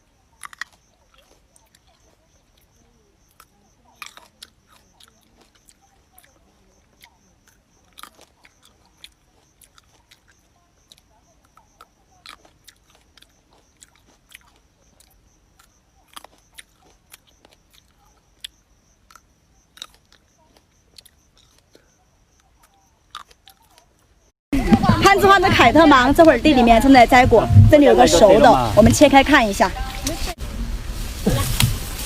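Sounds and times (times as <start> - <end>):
chewing crisp fruit: 0.0 - 24.8.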